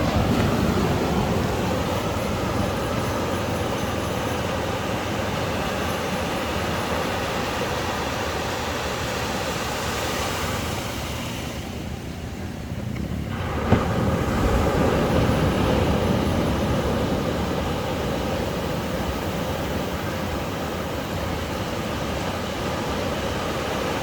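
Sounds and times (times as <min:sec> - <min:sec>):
wave breaking with deep rumble: 0:00.0 - 0:05.1, 0:12.8 - 0:24.0
ocean surf rushing: 0:00.0 - 0:24.0.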